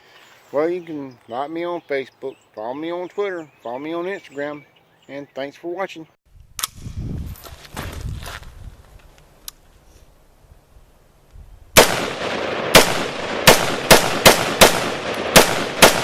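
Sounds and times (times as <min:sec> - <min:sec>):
loud sharp bangs with echo: 0:11.8 - 0:16.0.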